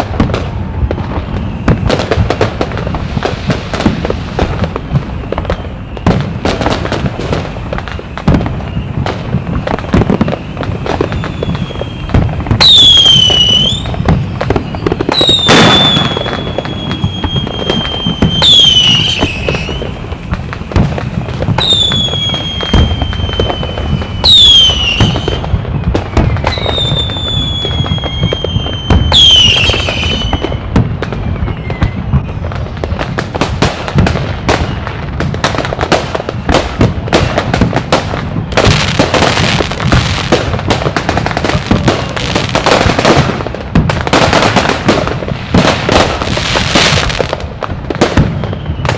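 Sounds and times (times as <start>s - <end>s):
fireworks popping and banging: 0.0s - 48.9s
whistling fireworks: 0.0s - 48.9s.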